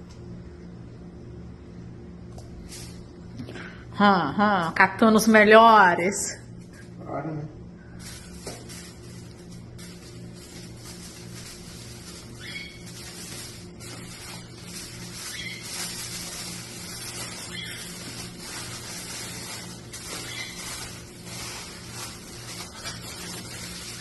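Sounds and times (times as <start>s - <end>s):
steady low hum: 0.0s - 24.0s
aluminium foil crinkling: 2.6s - 3.0s, 8.0s - 24.0s.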